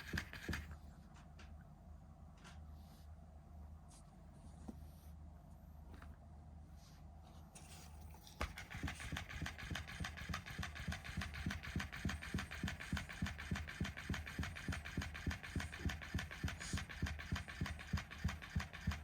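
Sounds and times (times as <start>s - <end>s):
toy motor running: 0.0s - 0.7s, 8.4s - 19.0s
mechanism knocking rhythmically: 0.0s - 0.8s, 8.4s - 19.0s.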